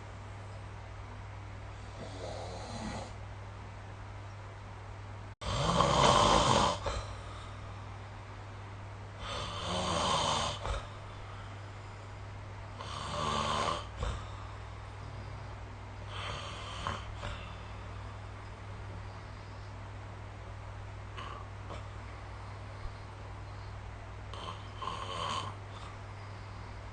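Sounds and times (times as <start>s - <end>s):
person snoring: 1.8s - 3.2s, 5.4s - 7.2s, 9.2s - 11.0s, 12.8s - 14.4s, 16.1s - 17.6s
faint breath: 10.6s - 12.4s, 13.9s - 20.2s, 21.2s - 24.8s, 25.7s - 26.9s.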